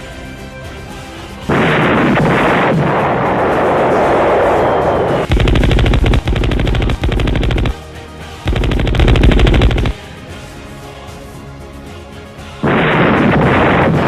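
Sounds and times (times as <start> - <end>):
automatic machine-gun fire: 1.5 - 3.0, 5.2 - 7.8, 8.5 - 10.0, 12.6 - 14.0.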